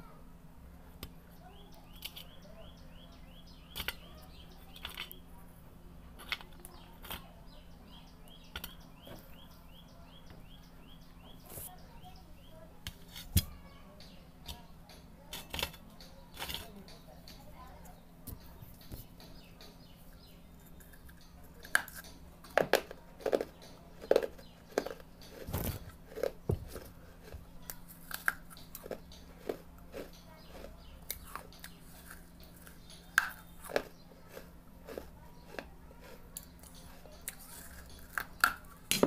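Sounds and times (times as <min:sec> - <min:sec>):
person chewing clay crunches: 0:20.2 - 0:39.0.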